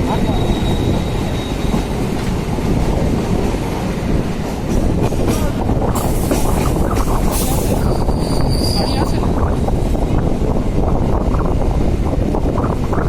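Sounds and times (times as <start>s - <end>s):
train rumbling on track: 0.0s - 13.0s.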